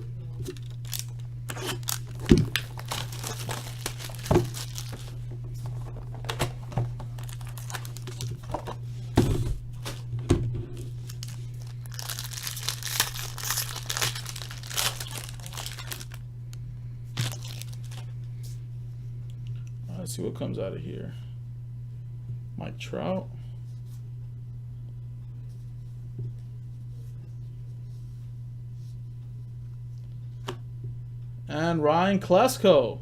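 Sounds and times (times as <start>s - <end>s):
steady low hum: 0.0s - 33.0s
wrapper tearing and crumpling: 0.5s - 5.2s, 7.1s - 8.5s, 10.8s - 16.2s, 17.2s - 18.1s.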